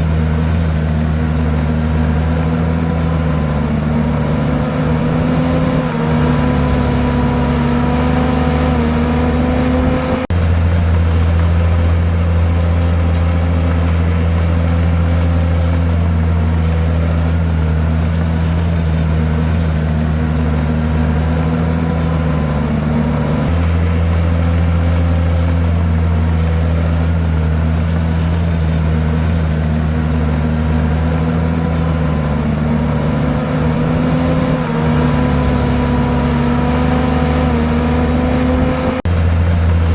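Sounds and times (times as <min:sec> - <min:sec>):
bulldozer diesel engine droning: 0:00.0 - 0:39.9.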